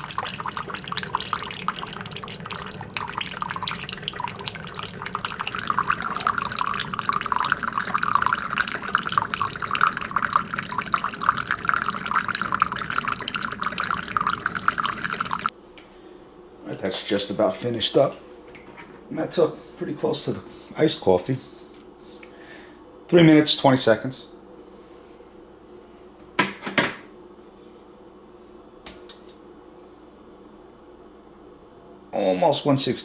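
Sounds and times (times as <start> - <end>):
coffee dripping into cup: 0.0 - 15.5.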